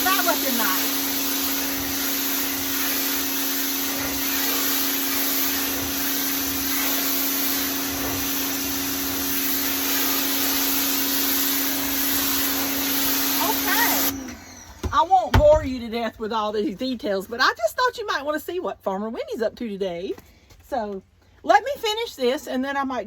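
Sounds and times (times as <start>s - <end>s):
pressure washer spraying: 0.0s - 15.6s.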